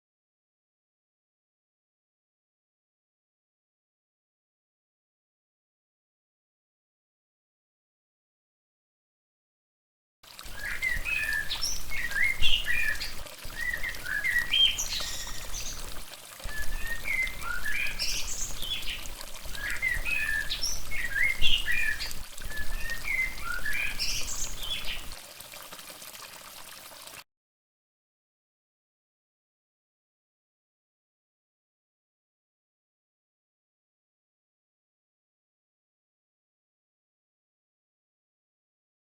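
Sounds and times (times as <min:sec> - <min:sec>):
songbird chirping and twittering: 0:10.5 - 0:15.9, 0:16.5 - 0:25.1.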